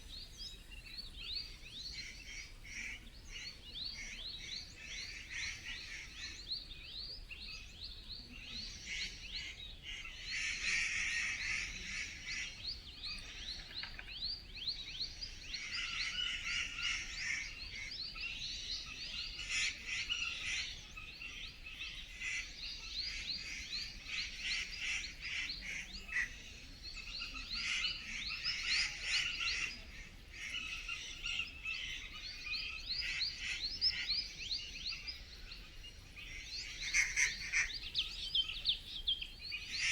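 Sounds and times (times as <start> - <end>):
birds chirping and calling: 0.0 - 39.9.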